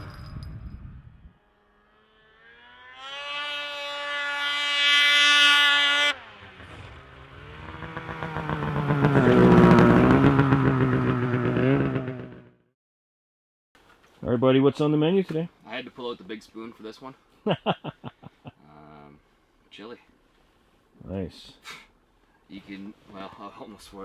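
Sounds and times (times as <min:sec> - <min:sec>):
snowmobile engine revving: 0:01.4 - 0:12.5.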